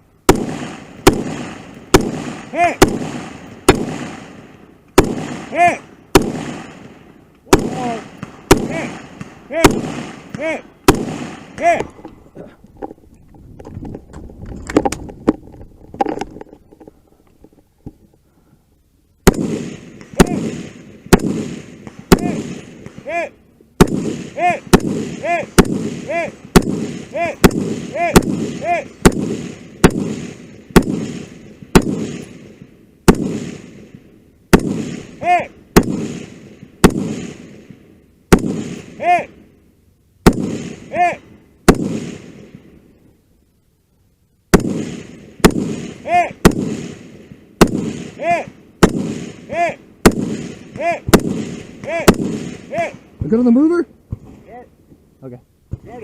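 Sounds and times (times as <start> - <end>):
gunshots: 0.2 - 11.9, 19.2 - 39.4, 40.2 - 42.8, 44.5 - 54.3.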